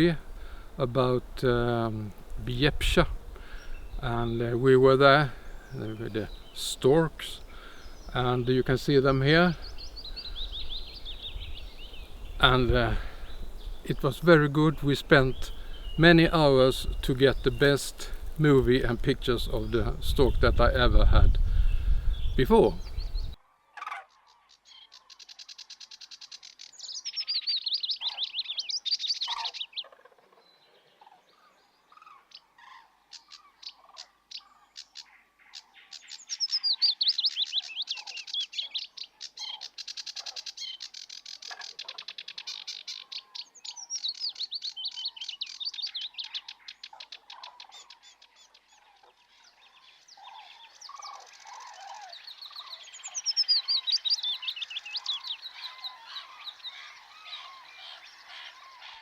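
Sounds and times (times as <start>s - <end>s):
birds singing trilled notes: 0.0s - 59.0s.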